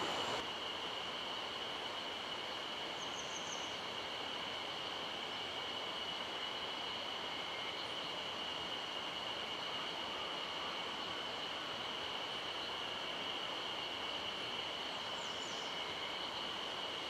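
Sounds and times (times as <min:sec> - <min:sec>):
stream running: 0:00.0 - 0:00.4.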